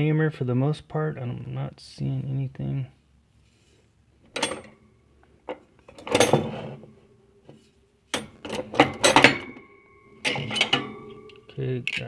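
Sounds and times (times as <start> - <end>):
metal hand tools clattering: 4.3 - 12.0.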